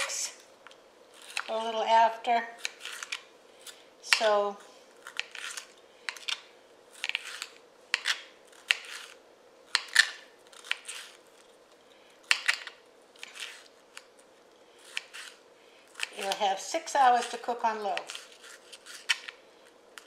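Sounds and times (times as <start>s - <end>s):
knife cutting potatoes: 1.1s - 1.8s, 2.4s - 11.5s, 12.2s - 14.1s, 14.8s - 19.4s.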